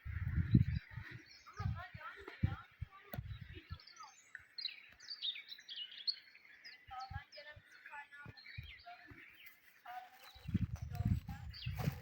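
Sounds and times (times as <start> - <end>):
soft low thumps: 0.0 - 3.8, 10.4 - 12.0
songbirds chirping: 0.0 - 12.0.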